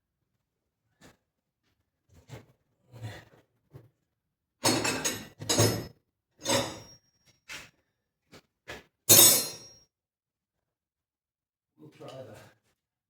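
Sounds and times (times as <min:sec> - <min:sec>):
metal tools clanking: 0:04.7 - 0:07.0, 0:09.1 - 0:09.7.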